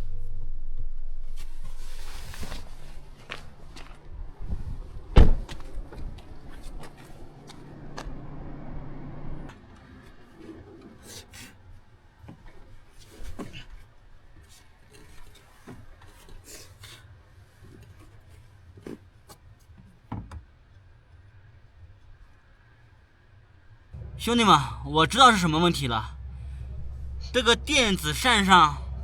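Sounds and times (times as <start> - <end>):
steady low hum: 24.0 - 29.0.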